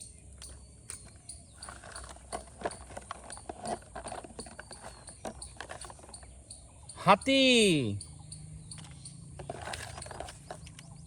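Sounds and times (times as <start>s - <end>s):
plastic toys clicking and knocking: 0.4s - 6.3s, 8.7s - 11.0s.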